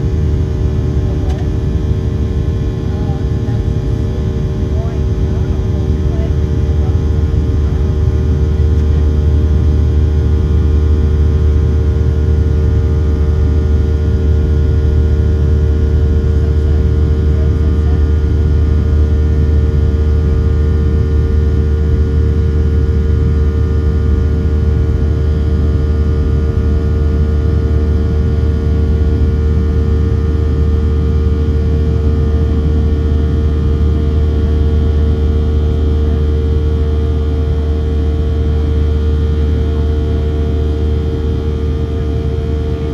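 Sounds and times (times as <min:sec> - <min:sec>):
airplane cabin rumble: 0:00.0 - 0:42.9.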